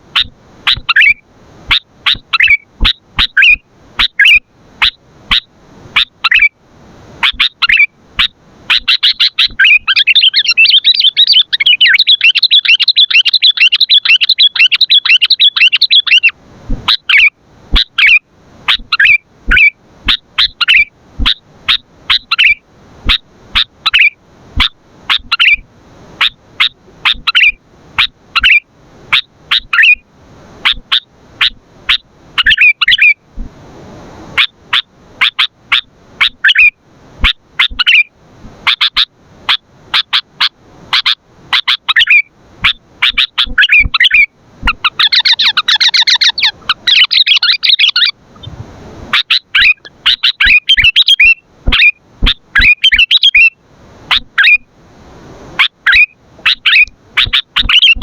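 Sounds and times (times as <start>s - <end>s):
bird chirping and chattering: 0.2s - 5.4s, 6.0s - 6.5s, 7.2s - 16.3s, 16.9s - 25.6s, 26.2s - 28.6s, 29.5s - 30.0s, 30.7s - 33.2s, 34.4s - 38.1s, 41.0s - 48.5s, 49.2s - 54.6s, 55.6s - 58.0s.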